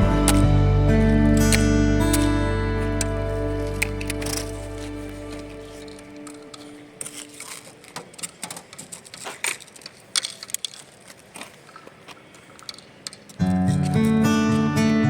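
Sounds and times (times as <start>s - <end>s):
acoustic guitar music: 0.0s - 7.8s, 13.4s - 15.0s
faint clicks and crackles: 0.0s - 14.6s.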